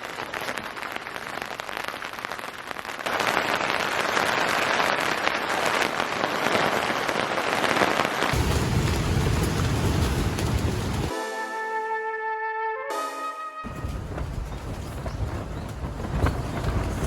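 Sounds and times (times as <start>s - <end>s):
rain pattering: 0.0s - 11.1s, 13.7s - 17.0s
music: 11.1s - 13.9s.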